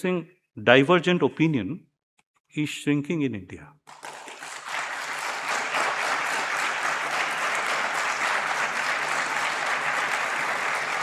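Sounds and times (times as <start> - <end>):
crowd applauding: 3.9 - 11.0.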